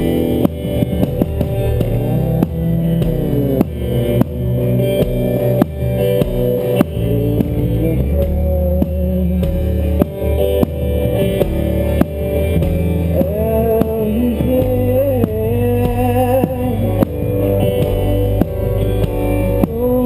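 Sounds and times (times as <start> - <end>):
bass guitar: 0.0 - 20.0
drum kit beat: 0.0 - 20.0
electric guitar bending notes: 0.0 - 20.0.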